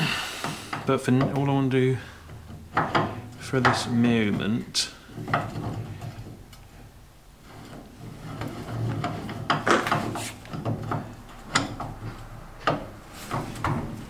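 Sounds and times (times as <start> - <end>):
metal rubbing and scraping: 0.0 - 14.0
metal parts knocking and clicking: 2.2 - 4.5, 8.4 - 14.0.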